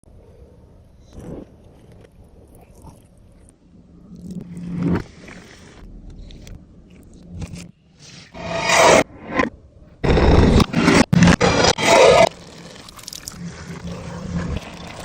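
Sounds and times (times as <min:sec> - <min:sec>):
loud noisy swell: 0:08.3 - 0:12.6
person biting and chewing food: 0:12.7 - 0:13.4.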